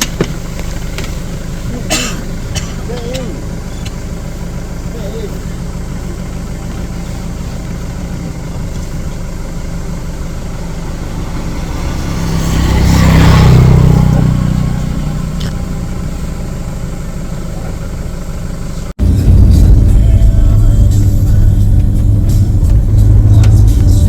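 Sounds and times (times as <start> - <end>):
vehicle engine and road rumble: 0.0 - 24.0
vehicle passing close by: 9.7 - 16.6.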